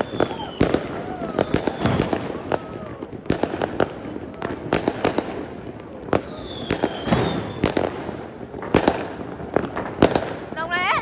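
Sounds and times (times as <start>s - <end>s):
high firework whistle: 0.0s - 4.5s, 6.2s - 7.9s
fireworks bangs: 0.0s - 11.0s
fireworks crackle and rumble: 0.0s - 11.0s.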